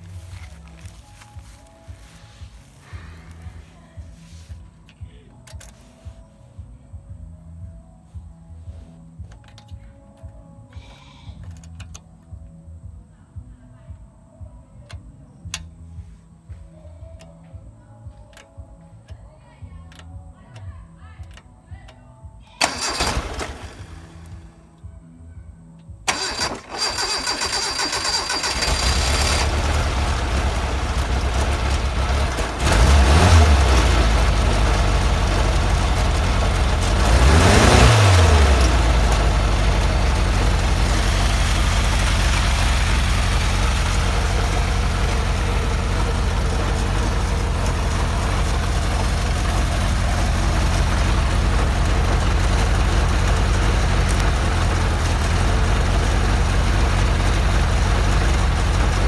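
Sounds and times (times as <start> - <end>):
helicopter engine starting and revving: 22.6 - 24.5, 26.1 - 59.0.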